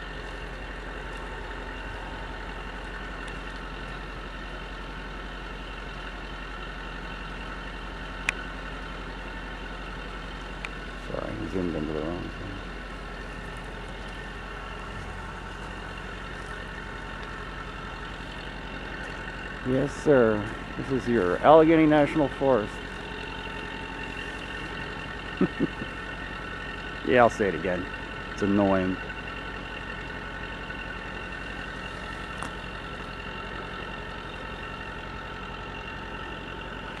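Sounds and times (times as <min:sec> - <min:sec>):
compressor station hum: 0:00.0 - 0:05.0.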